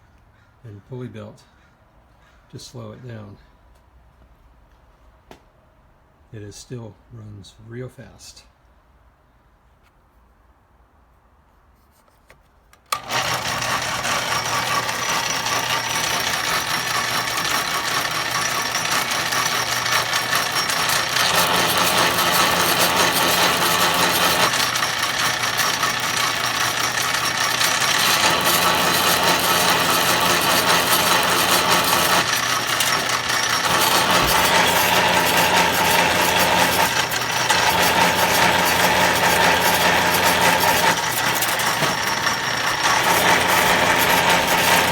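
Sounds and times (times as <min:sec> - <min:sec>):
motor-driven wire stripper clattering: 0:12.8 - 0:44.9.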